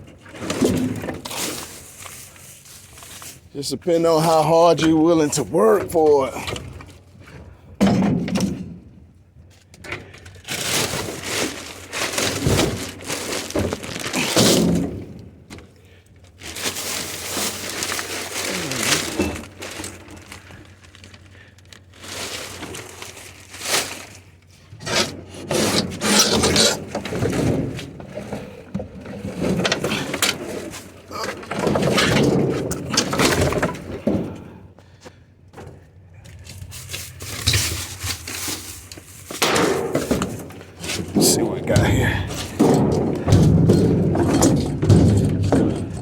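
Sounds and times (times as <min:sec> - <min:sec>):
knocks and thuds of junk: 0:00.1 - 0:01.8, 0:05.6 - 0:09.0, 0:09.8 - 0:15.7, 0:16.3 - 0:21.3, 0:24.8 - 0:35.9, 0:37.4 - 0:46.0
scrap scraping and dragging: 0:24.8 - 0:32.8.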